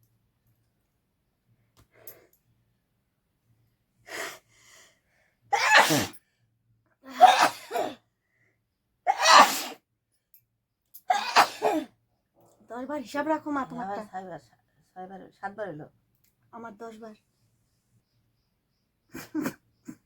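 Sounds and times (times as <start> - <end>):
person sneezing: 5.6 - 6.2, 7.1 - 8.0, 9.1 - 9.8, 11.1 - 11.9.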